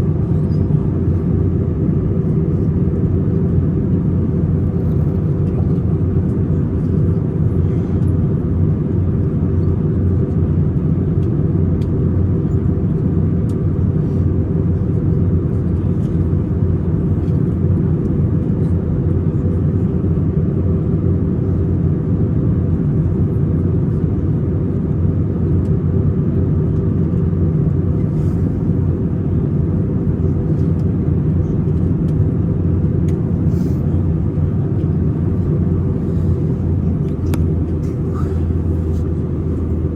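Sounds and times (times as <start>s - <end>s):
engine and airflow rumble: 0.0s - 39.9s.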